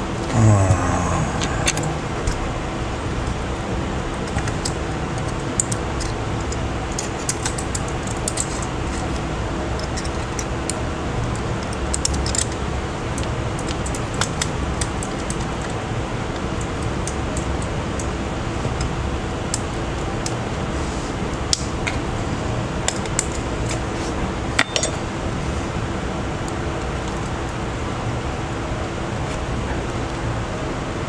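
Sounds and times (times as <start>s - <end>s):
steady background hum: 0.0s - 31.0s
sound falling in pitch: 0.3s - 2.7s
small tools clicking and tapping: 4.3s - 9.2s, 11.6s - 12.6s.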